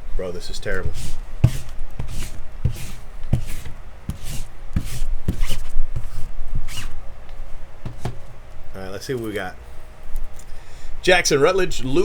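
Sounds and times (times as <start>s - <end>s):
cards knocking on a table: 7.9s - 8.2s.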